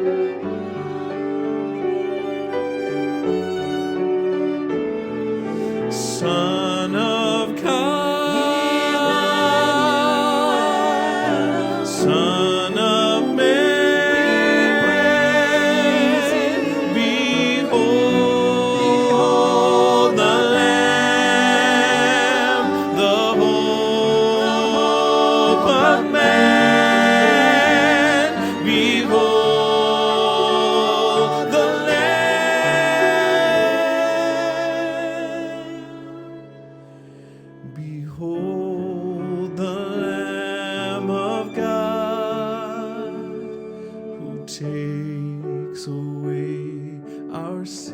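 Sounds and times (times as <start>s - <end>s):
sustained accompaniment: 0.0s - 37.9s
choir-like singing with vibrato: 5.6s - 36.6s, 38.2s - 45.1s.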